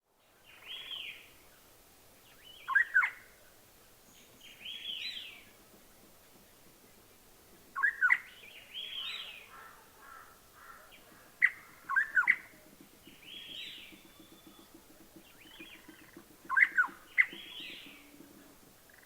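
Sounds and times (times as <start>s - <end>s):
fainter arching bird calls: 2.6s - 3.4s, 7.8s - 18.1s
loud sharp bird calls: 7.8s - 18.2s.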